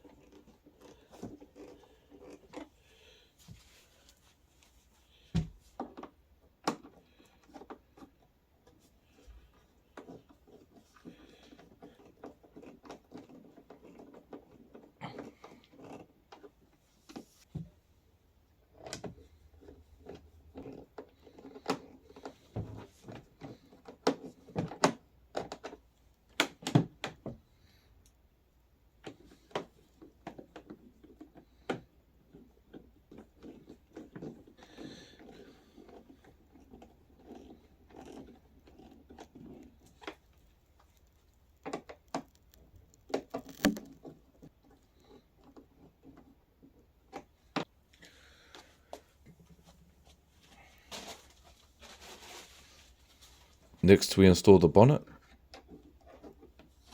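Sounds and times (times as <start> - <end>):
hard plastic parts clicking and knocking: 5.3 - 8.8, 18.7 - 27.5.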